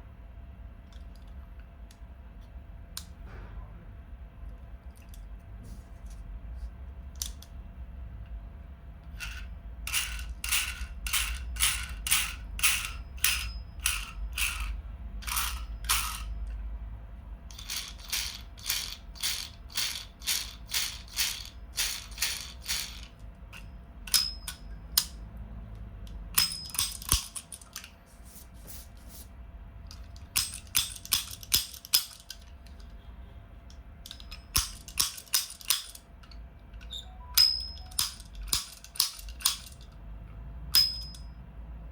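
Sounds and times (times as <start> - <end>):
toy revolver clicking: 37.4 - 39.9.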